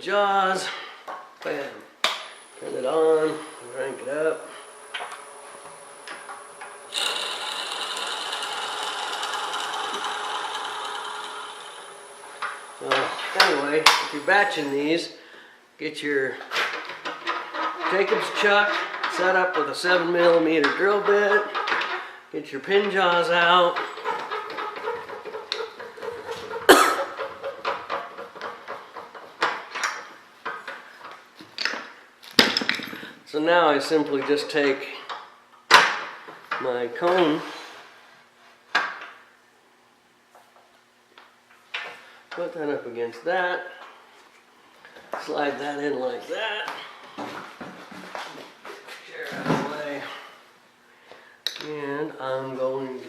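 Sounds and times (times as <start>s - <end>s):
wood lathe running: 2.8s - 14.1s, 23.7s - 26.6s
drill bit boring into wood: 2.9s - 14.0s
tools knocking and clunking: 23.7s - 30.7s.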